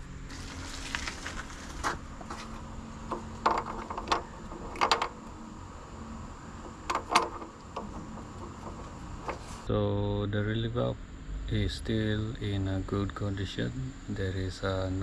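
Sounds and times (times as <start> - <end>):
faint steady hum: 0.0 - 15.0
metal parts clicking and knocking: 3.1 - 5.4, 6.5 - 9.7.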